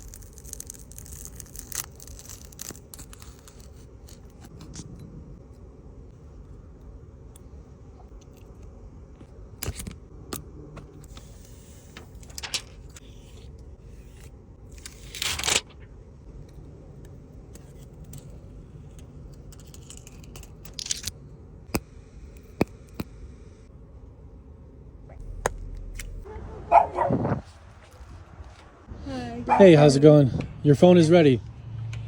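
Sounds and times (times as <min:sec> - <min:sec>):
rasping tearing noise: 0:00.0 - 0:05.0
low hum: 0:00.0 - 0:32.0.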